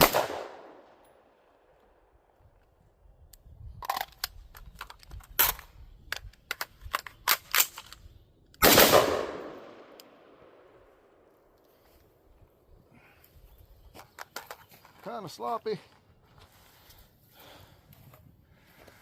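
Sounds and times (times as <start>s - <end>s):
gunshots: 0.0s - 0.8s, 8.6s - 10.0s
firearm clicks: 3.8s - 10.2s.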